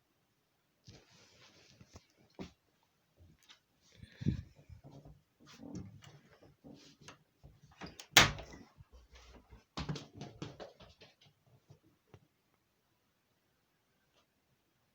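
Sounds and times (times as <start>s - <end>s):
knocks and rustles: 4.3s - 11.8s.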